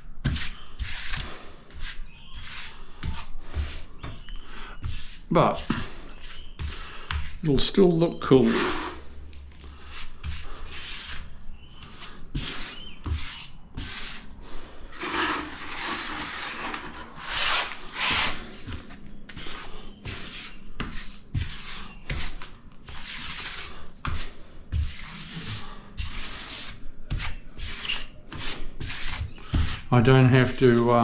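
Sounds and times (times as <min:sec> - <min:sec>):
grout float scraping tiles: 0:00.2 - 0:07.4, 0:08.1 - 0:31.0.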